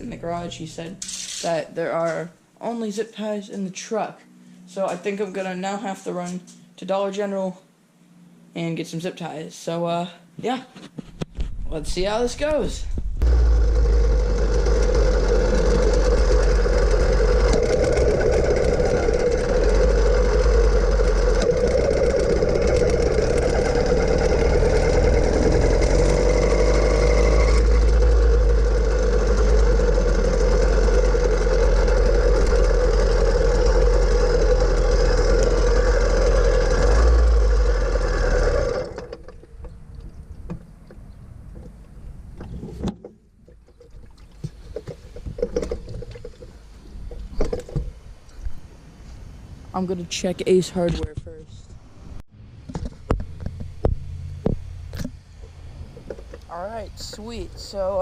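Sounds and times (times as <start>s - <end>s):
vehicle engine running: 0.0s - 1.0s, 11.9s - 41.7s, 52.3s - 58.0s.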